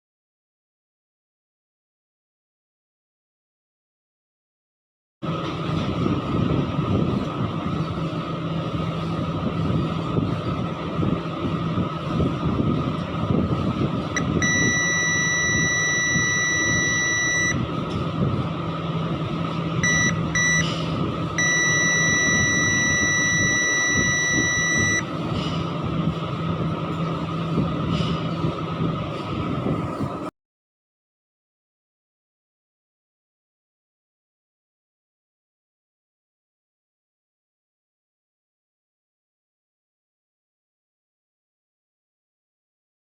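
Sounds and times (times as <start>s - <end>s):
loud rumble and hiss: 5.2s - 30.3s
high electronic beep: 14.2s - 17.6s, 19.8s - 20.8s, 21.4s - 25.0s.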